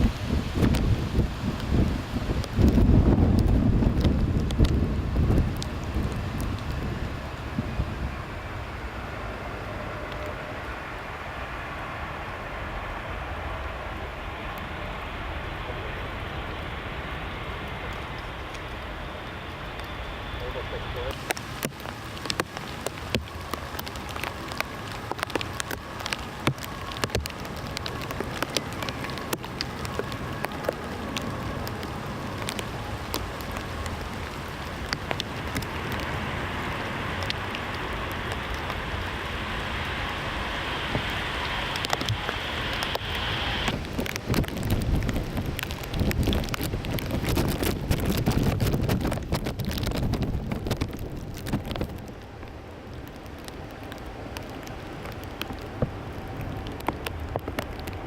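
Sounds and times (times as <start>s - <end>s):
low rumble: 0.0s - 21.4s
rain pattering: 0.0s - 58.0s.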